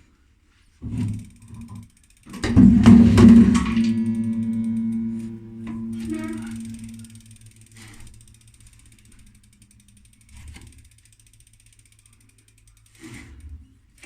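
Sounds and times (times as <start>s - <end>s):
bicycle freehub ticking: 1.0s - 2.6s, 6.0s - 14.0s
thumps: 2.4s - 7.4s.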